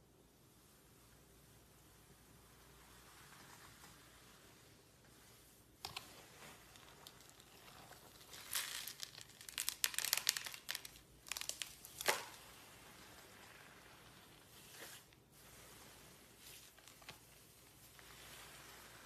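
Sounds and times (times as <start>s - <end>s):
slime crackling and clicking: 7.0s - 12.4s.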